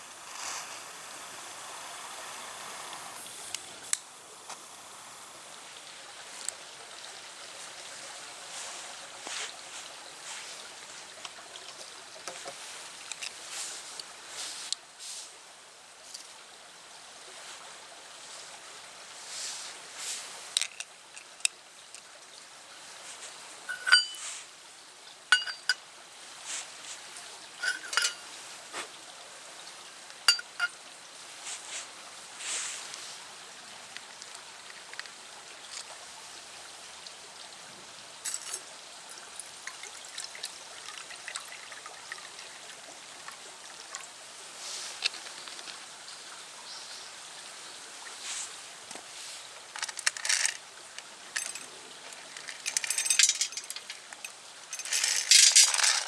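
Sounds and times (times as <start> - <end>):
steady hiss: 0.0 - 39.9, 44.2 - 56.0
pellets clinking against steel: 23.7 - 24.4, 25.3 - 25.8, 27.6 - 28.4, 30.3 - 30.8, 49.8 - 50.6, 51.3 - 56.0.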